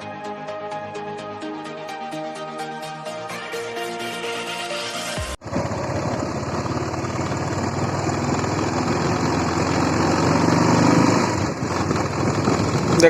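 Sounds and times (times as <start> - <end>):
motorcycle engine running: 5.4 - 13.0.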